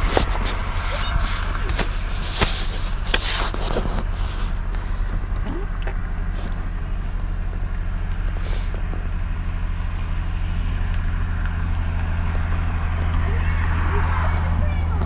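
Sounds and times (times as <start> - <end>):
handling rustling and clicks: 0.0 - 5.4
road traffic: 0.0 - 15.0.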